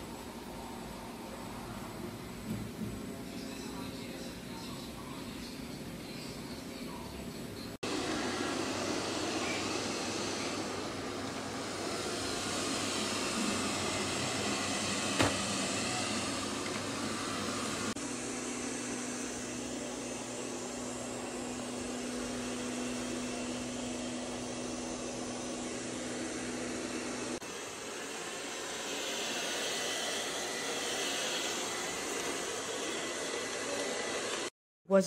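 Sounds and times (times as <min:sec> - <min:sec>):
robot vacuum cleaner whirring: 0:07.8 - 0:34.5.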